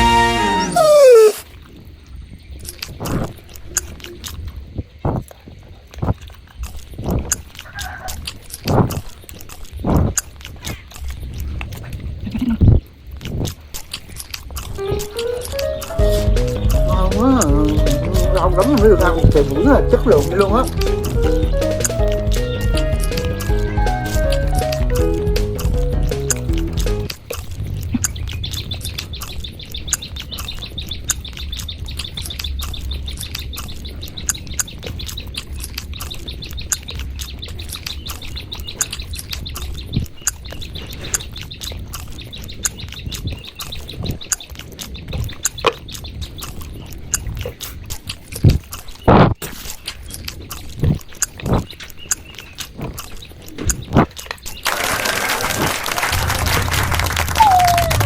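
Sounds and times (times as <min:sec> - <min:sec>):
chewing and mouth clicks: 0:01.3 - 0:54.7, 0:56.1 - 0:58.0
steady high chirping: 0:14.8 - 0:27.1.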